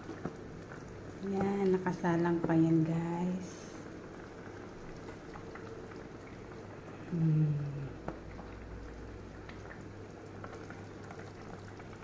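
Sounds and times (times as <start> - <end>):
stew simmering and bubbling: 0.0 - 12.0
person humming: 7.1 - 8.0.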